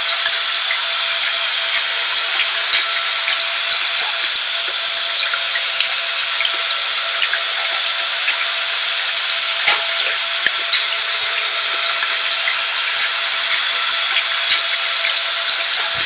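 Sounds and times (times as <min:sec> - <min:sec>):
vacuum cleaner running: 0:00.0 - 0:16.0.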